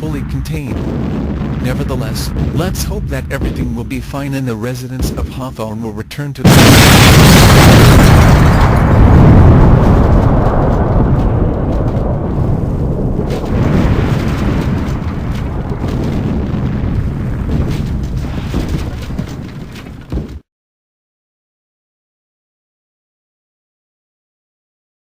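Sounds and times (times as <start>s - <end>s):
deep explosion rumble: 0.0s - 20.4s.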